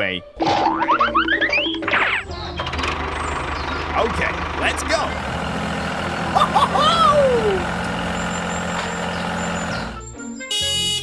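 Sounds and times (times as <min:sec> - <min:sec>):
vehicle engine running: 0:02.2 - 0:10.2.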